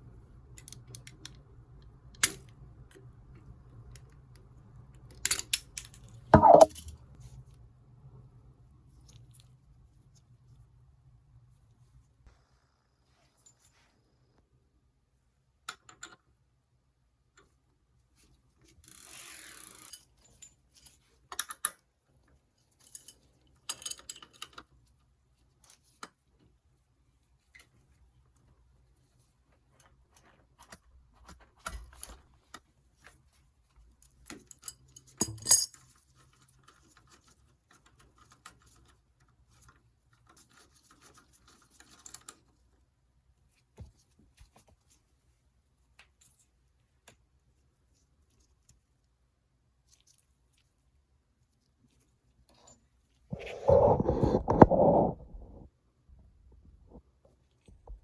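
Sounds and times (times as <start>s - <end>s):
metal tools clinking and scraping: 35.2s - 35.7s.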